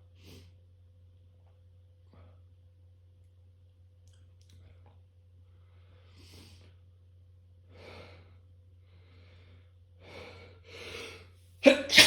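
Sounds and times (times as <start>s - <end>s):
soft human breathing: 4.6s - 6.9s, 7.6s - 11.4s.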